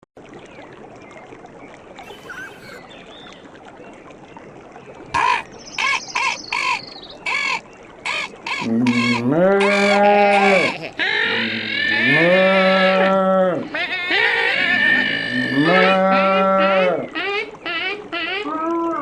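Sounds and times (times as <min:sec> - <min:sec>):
faint birdsong: 0:00.4 - 0:09.2
high bird trill: 0:02.0 - 0:02.8, 0:05.2 - 0:09.2
cow mooing: 0:08.6 - 0:13.6, 0:14.6 - 0:17.1.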